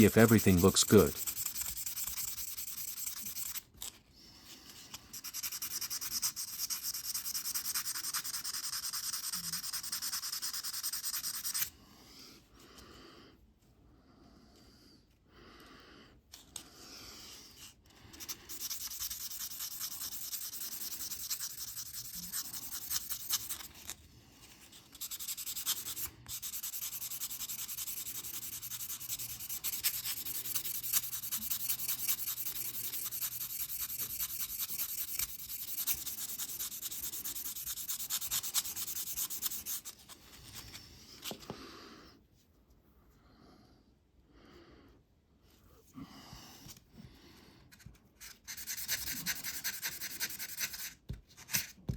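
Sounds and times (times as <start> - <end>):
sandpaper scratching on metal: 0.0 - 3.6, 5.1 - 11.7, 18.5 - 23.9, 24.9 - 40.1, 48.2 - 51.7.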